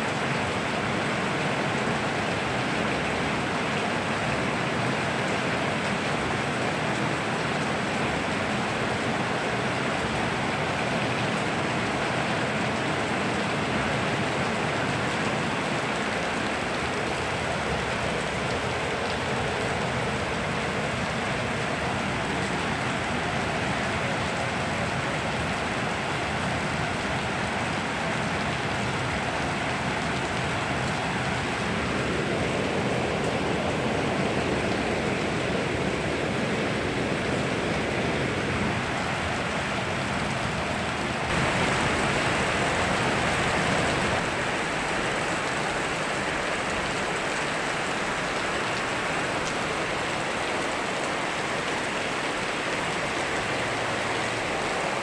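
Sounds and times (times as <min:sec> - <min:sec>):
river rushing: 0:00.0 - 0:55.0
steady rainfall: 0:00.0 - 0:55.0.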